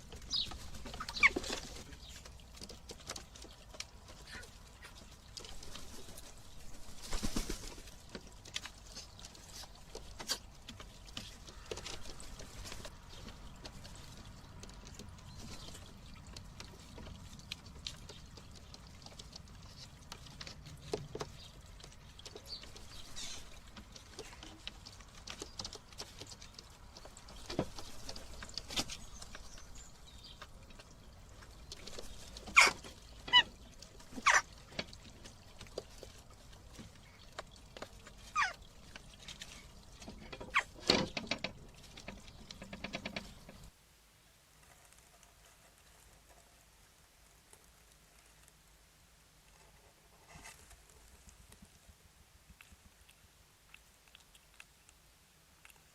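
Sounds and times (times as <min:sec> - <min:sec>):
rustling: 0:44.4 - 0:55.9
hedgehog crunching food: 0:44.6 - 0:55.9.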